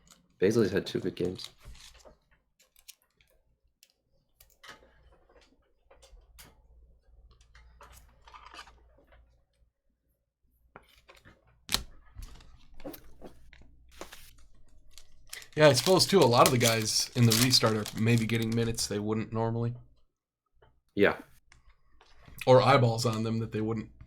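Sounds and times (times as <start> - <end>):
trading cards clicking and rustling: 0.1 - 2.1, 11.7 - 19.0
card snapping: 11.7 - 11.9, 15.3 - 18.8.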